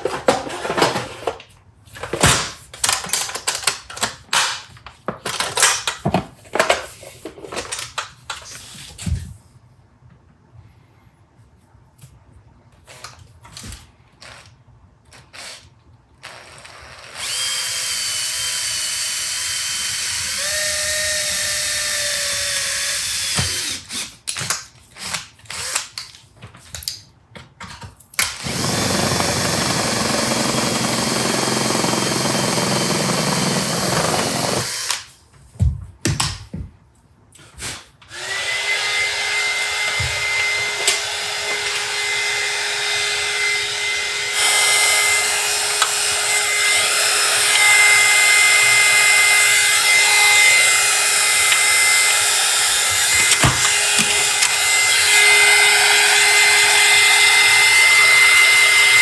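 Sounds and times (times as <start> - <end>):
handheld power tool running: 17.1 - 24.0, 28.4 - 35.1, 38.1 - 59.0.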